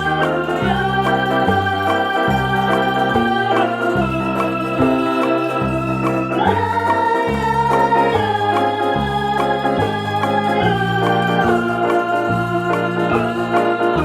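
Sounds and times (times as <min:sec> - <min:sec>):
electronic organ music: 0:00.0 - 0:14.0.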